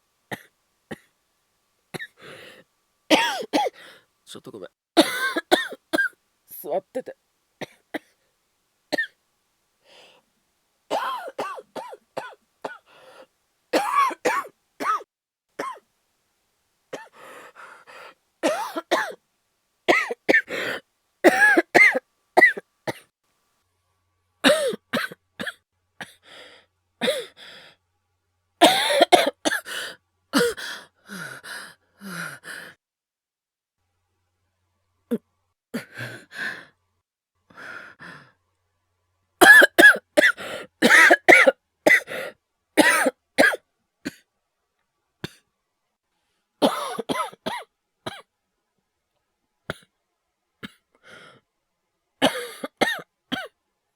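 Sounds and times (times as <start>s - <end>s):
man coughing: 3.1s - 3.8s, 5.0s - 6.1s, 13.8s - 15.0s, 42.8s - 44.2s.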